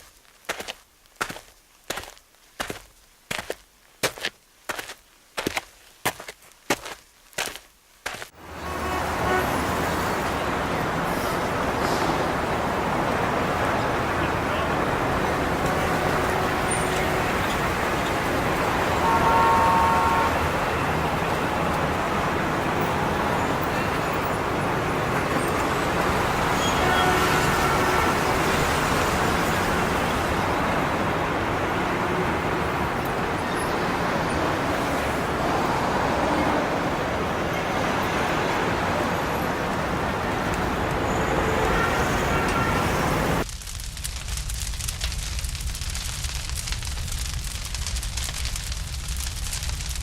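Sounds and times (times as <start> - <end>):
street traffic noise: 8.1 - 43.5
short car horn toots: 19.0 - 20.5.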